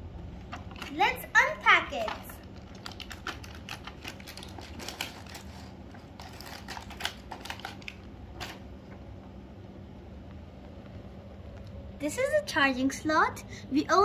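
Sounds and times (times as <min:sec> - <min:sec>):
packaging clicks and taps: 0:01.9 - 0:05.6.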